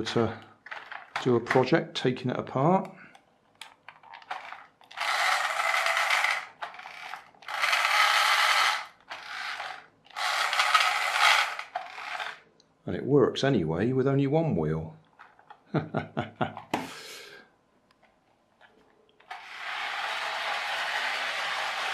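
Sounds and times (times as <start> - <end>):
toy car motor whirring and grinding: 4.1 - 12.4, 19.3 - 21.9.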